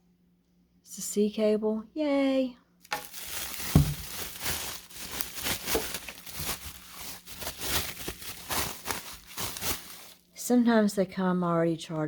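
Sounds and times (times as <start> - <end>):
plastic packaging crinkling: 2.8 - 10.3
thump: 3.6 - 4.2.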